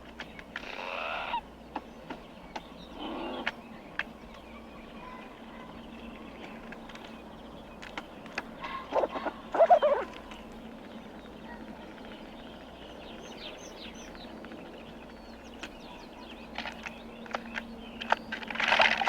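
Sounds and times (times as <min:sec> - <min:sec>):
squirrel barking calls: 0:00.6 - 0:01.4, 0:08.6 - 0:10.5.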